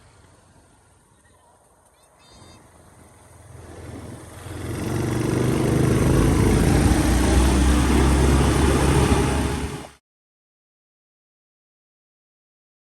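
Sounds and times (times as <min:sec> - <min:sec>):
atv engine running: 0:02.6 - 0:09.9.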